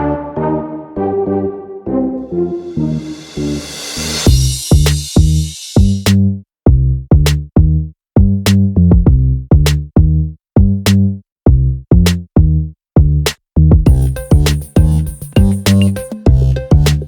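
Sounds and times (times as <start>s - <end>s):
deep bass notes: 0.0s - 17.0s
drum machine clicks: 13.9s - 17.0s.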